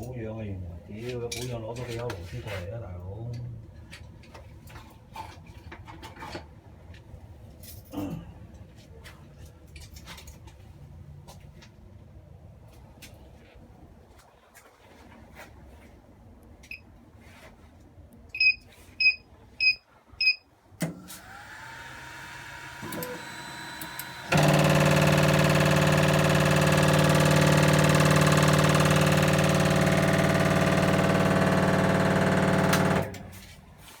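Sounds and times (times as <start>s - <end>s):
loud electric hum: 21.2s - 33.6s
printer beeping: 22.8s - 33.3s.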